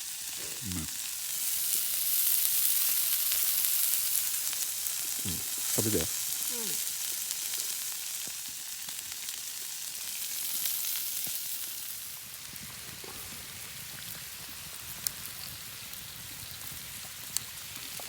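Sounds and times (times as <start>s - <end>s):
food sizzling on a griddle: 0.0s - 18.0s.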